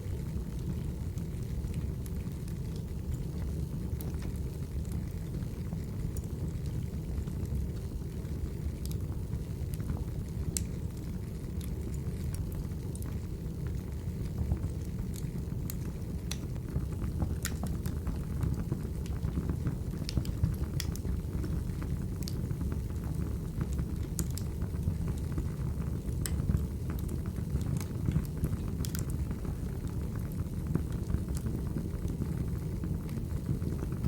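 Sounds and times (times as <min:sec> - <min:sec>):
fire crackling and popping: 0:00.0 - 0:34.0
fire low rumble: 0:00.0 - 0:34.0.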